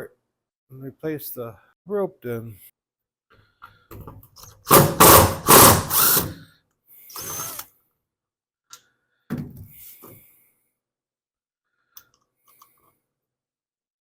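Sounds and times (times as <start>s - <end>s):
power drill whining: 4.7s - 6.4s, 7.1s - 7.7s.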